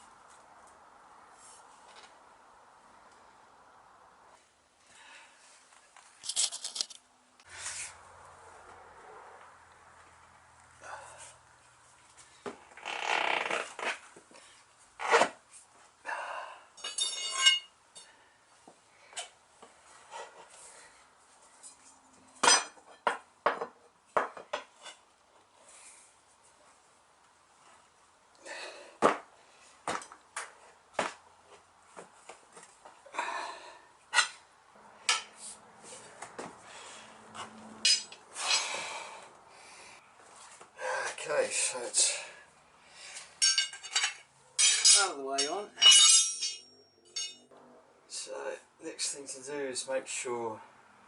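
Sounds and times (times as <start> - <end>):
rubbery tyre scraping: 7.4 - 8.1, 12.3 - 15.7
ringing metallic clink: 16.8 - 17.7, 37.8 - 38.2, 43.4 - 47.5.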